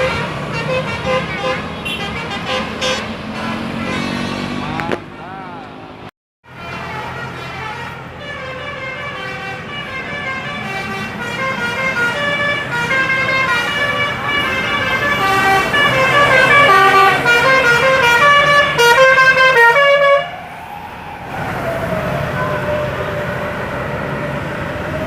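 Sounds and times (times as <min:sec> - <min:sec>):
bus musical horn melody: 0:00.0 - 0:04.6, 0:06.5 - 0:20.4.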